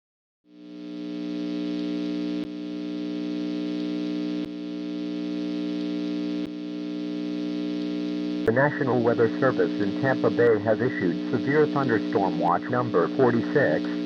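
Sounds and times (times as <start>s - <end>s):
harsh buzzing alert drone: 8.5s - 14.0s.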